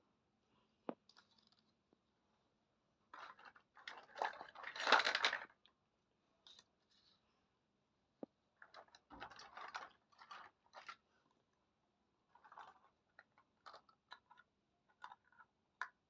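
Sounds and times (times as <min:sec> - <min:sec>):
rustling and scraping of toys: 0:00.9 - 0:01.9, 0:03.1 - 0:05.6, 0:06.4 - 0:07.4, 0:08.5 - 0:11.5, 0:12.2 - 0:16.0.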